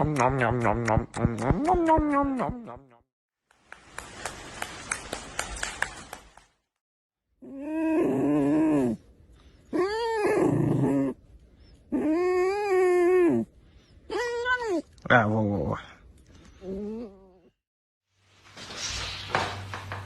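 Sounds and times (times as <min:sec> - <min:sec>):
rustling with sharp clicks: 0:03.5 - 0:06.6.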